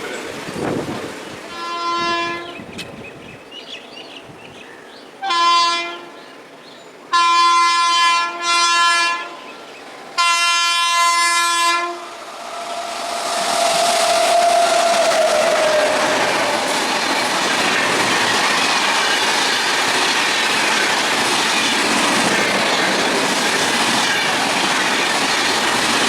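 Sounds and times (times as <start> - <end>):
approaching train noise: 0.0 - 3.5, 5.1 - 26.0
locomotive air horn blasts: 1.5 - 2.7, 5.2 - 6.2, 7.1 - 9.5, 10.2 - 12.2.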